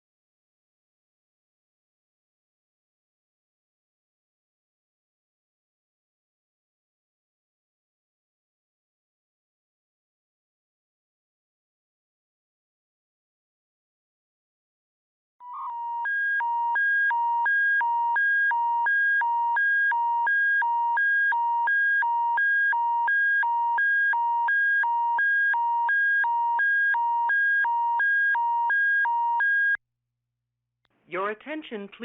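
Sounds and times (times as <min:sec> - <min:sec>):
alternating two-tone alert signal: 0:15.4 - 0:29.8.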